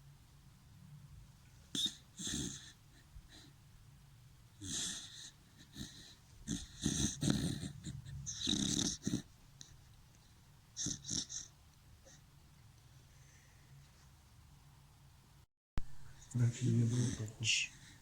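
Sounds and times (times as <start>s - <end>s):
dog snoring: 1.7s - 3.5s, 4.6s - 9.4s, 10.8s - 12.2s, 16.6s - 18.0s.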